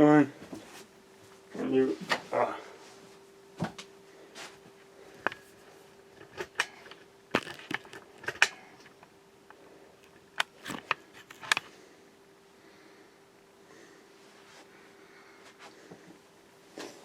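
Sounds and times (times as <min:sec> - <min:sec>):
faint steady hum: 0:00.0 - 0:17.0
clicks handling computer hardware: 0:06.2 - 0:11.7.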